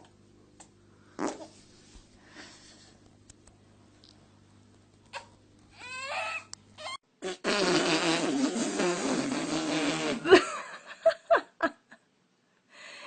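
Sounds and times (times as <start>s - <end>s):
loud raspy fart: 1.2s - 1.5s, 7.2s - 10.4s.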